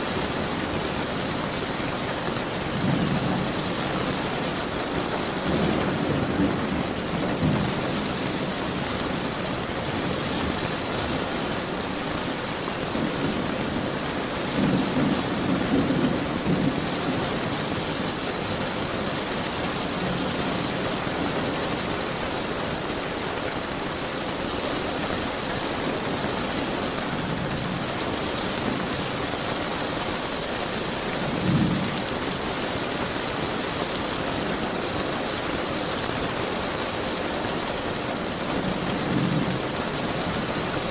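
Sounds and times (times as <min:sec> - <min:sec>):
steady rain: 0:00.0 - 0:40.9
thunder rumbling: 0:00.1 - 0:21.5.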